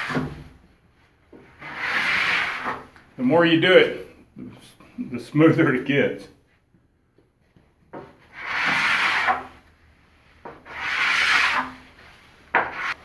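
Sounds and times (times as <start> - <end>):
rubbing strokes on table top: 1.4 - 2.9, 8.2 - 13.0.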